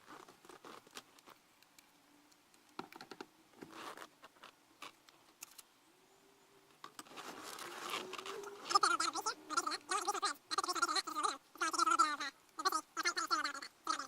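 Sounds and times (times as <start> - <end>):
soft rustles: 0.0 - 2.0, 3.5 - 5.6, 6.8 - 10.0.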